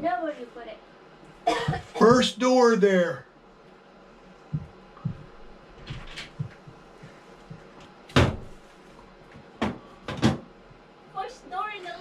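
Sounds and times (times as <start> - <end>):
cupboard doors knocking and banging: 8.1 - 8.6, 9.6 - 10.5.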